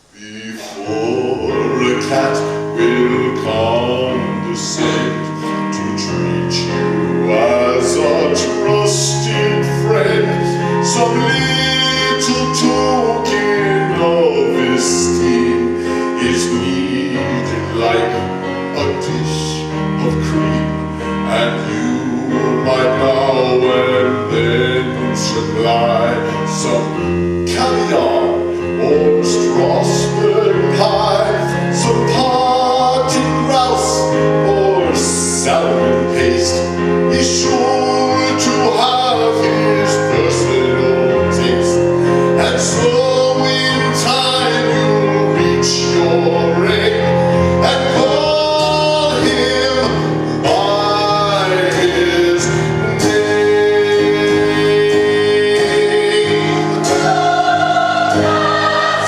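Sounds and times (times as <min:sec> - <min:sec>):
instrumental accompaniment: 0:00.0 - 0:59.0
man singing musical theatre song: 0:00.0 - 0:59.0.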